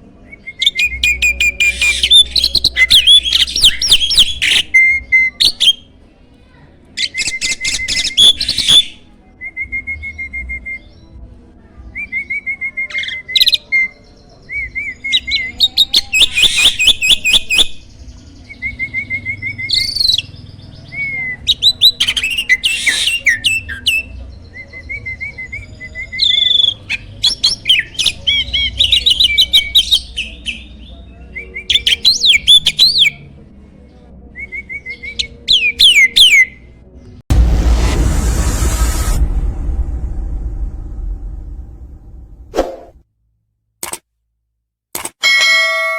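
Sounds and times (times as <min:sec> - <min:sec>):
starling singing: 0:00.6 - 0:04.8, 0:18.5 - 0:33.2.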